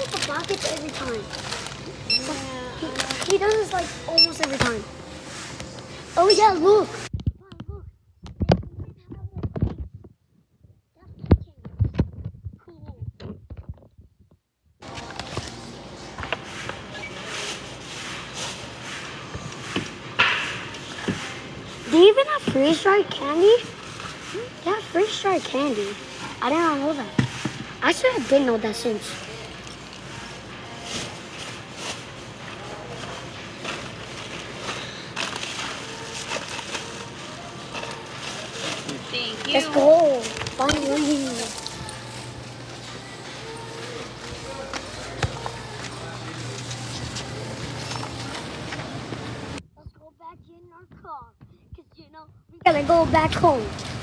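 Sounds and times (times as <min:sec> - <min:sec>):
snack package crinkling: 0:00.0 - 0:03.8, 0:33.8 - 0:48.6
shop interior background noise: 0:00.0 - 0:07.8, 0:14.8 - 0:49.8, 0:52.1 - 0:54.0
faint background music: 0:00.0 - 0:10.0, 0:14.8 - 0:54.0.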